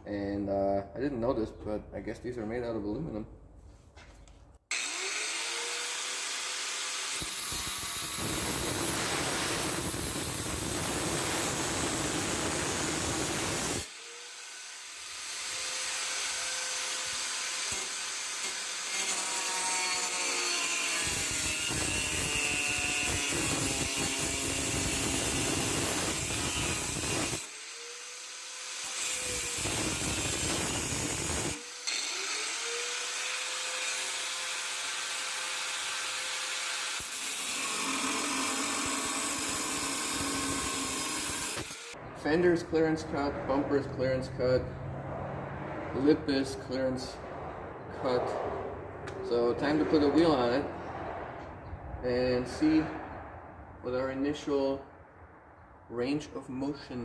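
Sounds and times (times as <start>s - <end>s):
angle grinder cutting metal: 4.7s - 42.0s.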